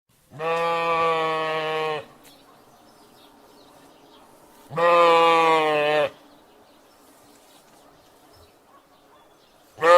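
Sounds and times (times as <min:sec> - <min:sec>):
sheep bleating: 0:00.3 - 0:02.1, 0:04.7 - 0:06.2.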